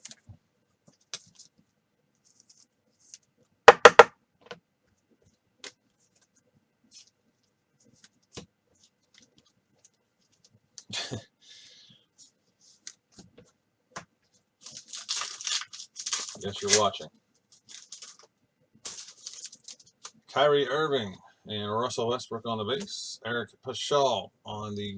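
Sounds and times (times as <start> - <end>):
sharp knocks: 3.7 - 4.1
plastic cards clicking and scraping: 14.6 - 16.9, 17.5 - 20.2.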